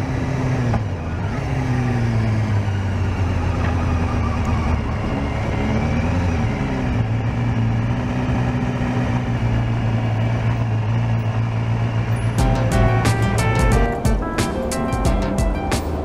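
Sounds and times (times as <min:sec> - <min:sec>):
music: 0:12.4 - 0:16.0.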